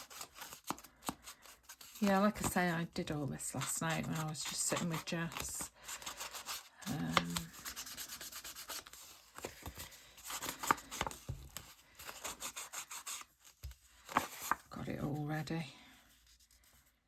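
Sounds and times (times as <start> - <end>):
paper rustling: 3.6 - 14.7.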